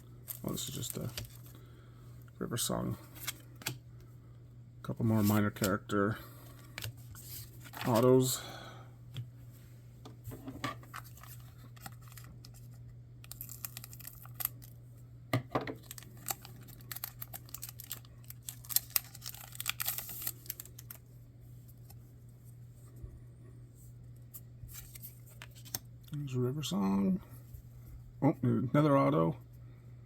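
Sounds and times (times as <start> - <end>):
low steady hum: 0.0 - 30.0
card wrapper rustling and crinkling: 0.2 - 1.6, 6.5 - 8.3, 10.8 - 14.8, 15.7 - 22.0, 24.7 - 25.9.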